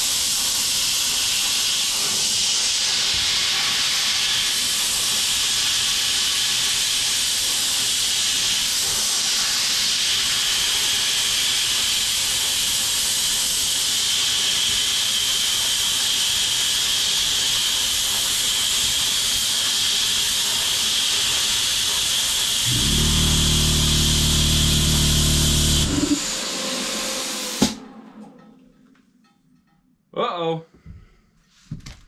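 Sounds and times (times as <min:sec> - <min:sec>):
plasma cutter arc hissing: 0:02.4 - 0:27.2
air compressor motor hum: 0:22.6 - 0:26.6.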